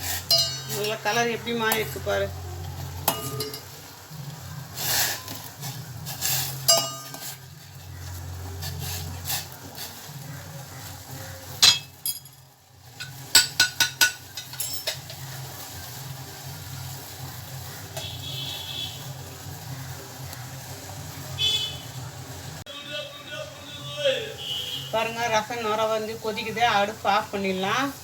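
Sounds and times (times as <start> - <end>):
utensils clinking against pots: 0.0 - 2.1, 3.0 - 3.8, 4.9 - 7.8, 11.6 - 15.4.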